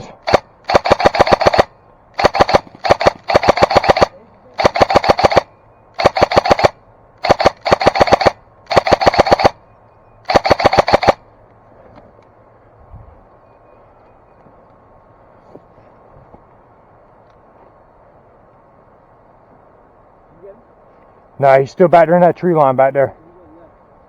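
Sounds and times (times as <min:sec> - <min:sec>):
airsoft gun rapid firing: 0:00.0 - 0:09.6, 0:10.3 - 0:11.2.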